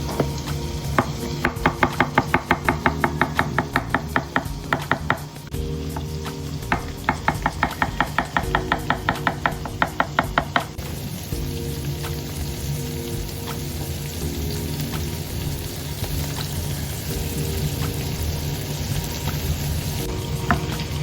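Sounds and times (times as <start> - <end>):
background music: 0.0 - 21.0
knife chopping on cutting board: 1.0 - 5.3, 6.7 - 10.7.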